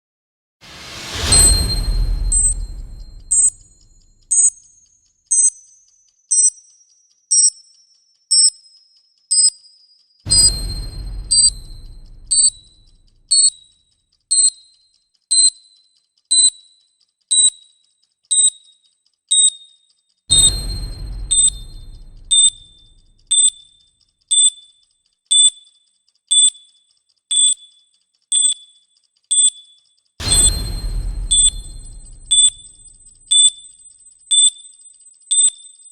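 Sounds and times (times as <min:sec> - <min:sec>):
loud low boom: 0:00.6 - 0:04.3, 0:10.3 - 0:13.3, 0:20.3 - 0:23.3, 0:30.2 - 0:33.4
low rumble: 0:00.6 - 0:04.3, 0:10.3 - 0:13.3, 0:20.3 - 0:23.3, 0:30.2 - 0:33.4
short high electronic beeps: 0:00.8 - 0:04.6, 0:20.3 - 0:23.1
faint ticks: 0:13.1 - 0:20.2.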